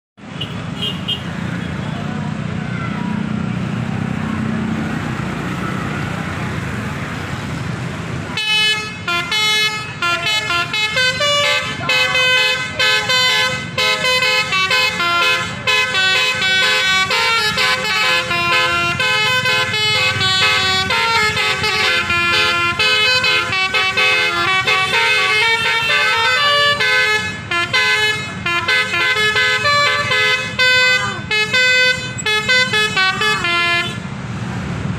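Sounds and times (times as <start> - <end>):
low traffic rumble: 0.2 - 34.9
musical air horn: 8.4 - 34.1.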